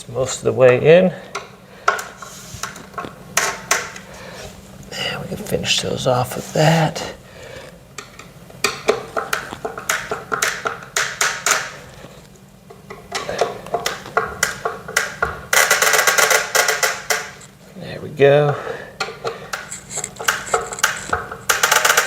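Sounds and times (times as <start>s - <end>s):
screwdriver clicking and rasping: 13.8s - 17.5s, 19.0s - 22.0s.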